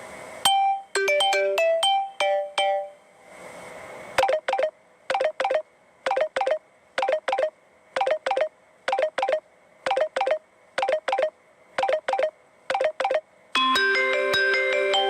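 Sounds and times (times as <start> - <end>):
electronic double beeps ringtone: 4.2 - 13.2.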